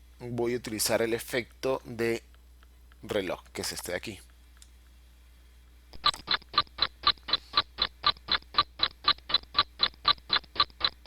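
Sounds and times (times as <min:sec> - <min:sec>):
clock ticking: 0:06.0 - 0:11.0.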